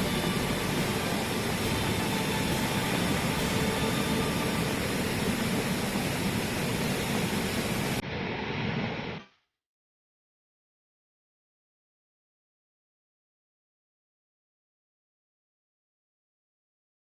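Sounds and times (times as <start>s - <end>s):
waterfall rushing: 0.0s - 8.0s.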